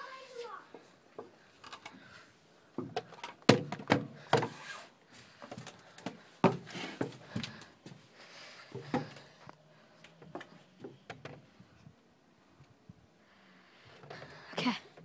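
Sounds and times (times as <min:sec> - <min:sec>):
irregular knocks and thumps: 0:05.6 - 0:07.6, 0:08.7 - 0:09.3.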